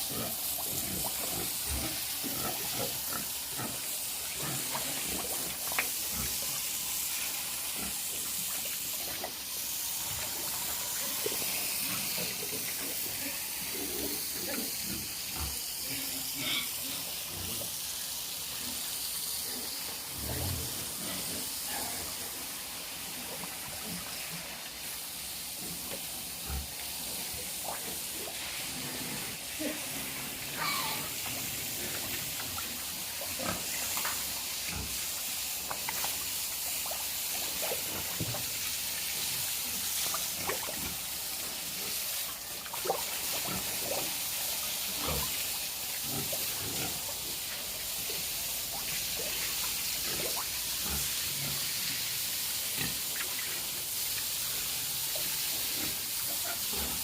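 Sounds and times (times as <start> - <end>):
pigs grunting: 0.0 - 5.5, 10.9 - 17.7, 28.4 - 32.4
running water hiss: 0.0 - 57.0.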